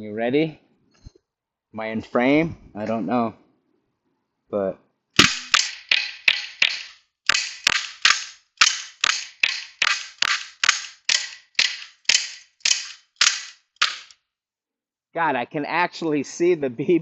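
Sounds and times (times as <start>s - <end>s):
pistol shots cracking: 5.2s - 14.1s.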